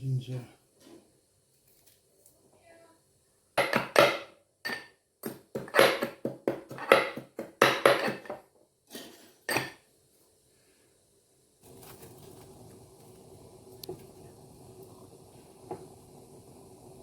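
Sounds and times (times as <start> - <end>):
knife chopping: 5.2 - 8.2.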